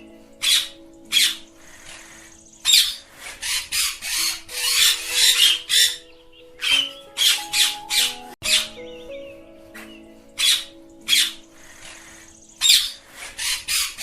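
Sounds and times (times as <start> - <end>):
parakeets squawking: 0.4 - 14.0.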